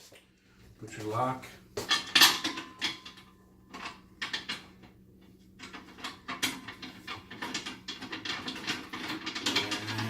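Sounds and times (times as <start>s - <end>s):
metal parts clicking and knocking: 5.6s - 10.0s.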